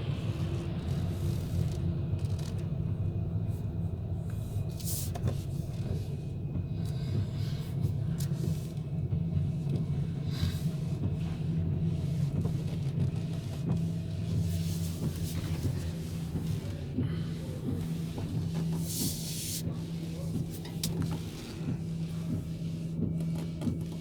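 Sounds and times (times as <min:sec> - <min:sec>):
ship engines rumbling: 0:13.7 - 0:23.1.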